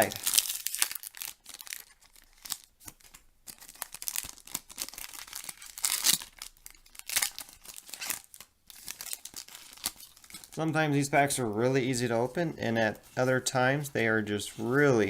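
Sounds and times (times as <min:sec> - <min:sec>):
foil pack tearing and crinkling: 0:00.0 - 0:10.6.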